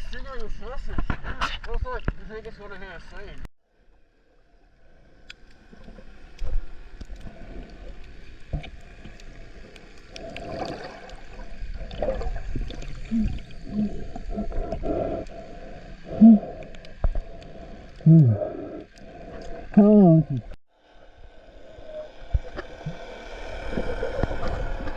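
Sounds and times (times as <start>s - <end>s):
muffled underwater gurgling: 10.1s - 20.6s.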